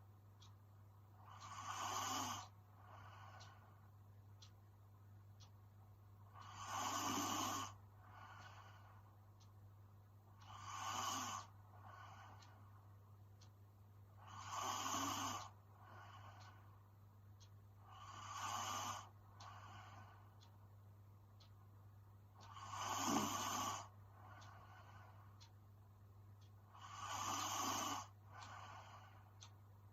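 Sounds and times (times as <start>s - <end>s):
steady low hum: 0.0s - 29.9s
faint breaths: 0.4s - 4.6s, 6.3s - 9.6s, 10.3s - 13.5s, 14.1s - 20.7s, 22.3s - 29.9s
woman snoring: 1.4s - 2.5s, 6.4s - 7.8s, 10.5s - 11.5s, 14.3s - 15.6s, 17.9s - 19.1s, 22.5s - 23.9s, 26.8s - 28.1s.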